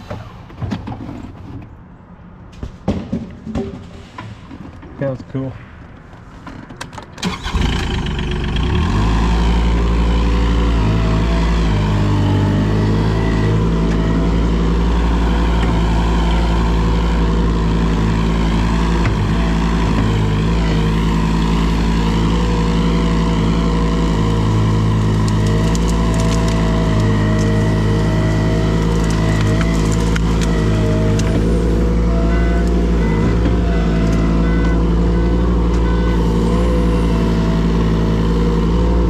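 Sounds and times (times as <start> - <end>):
large engine starting and running: 7.1 - 39.0.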